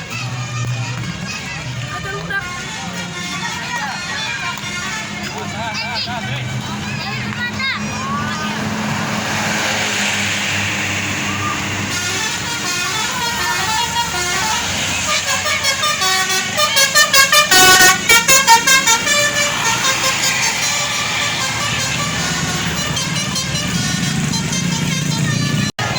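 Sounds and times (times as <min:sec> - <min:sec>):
low engine hum: 0:04.6 - 0:25.9
musical bus horns playing short notes: 0:11.7 - 0:25.7.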